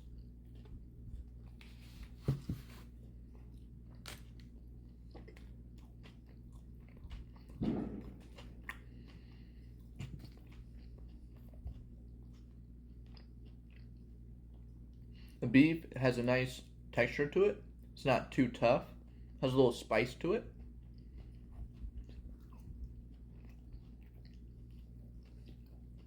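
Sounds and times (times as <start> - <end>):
steady low hum: 0.0 - 26.0
wet chewing and mouth smacks: 2.9 - 15.4, 20.5 - 26.0.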